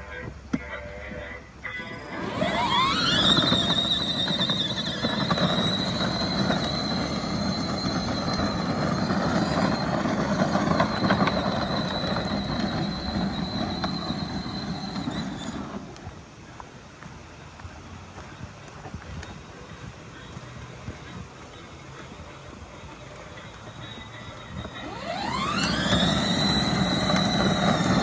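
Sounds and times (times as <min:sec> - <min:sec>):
electric motors whining: 0:01.8 - 0:17.0, 0:23.0 - 0:28.0.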